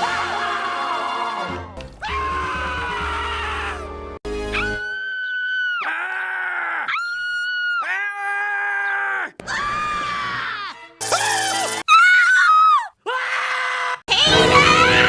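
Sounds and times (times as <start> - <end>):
cartoon characters screaming: 4.5 - 15.0.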